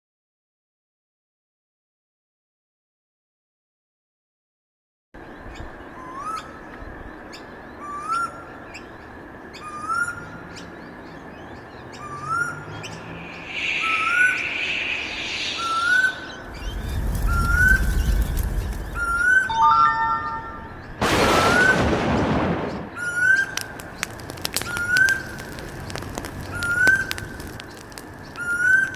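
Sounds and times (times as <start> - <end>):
bird's short rising call: 12.0 - 21.0
high bird chirps: 12.0 - 21.4
hiss: 12.4 - 19.4
low rumble: 12.4 - 23.0.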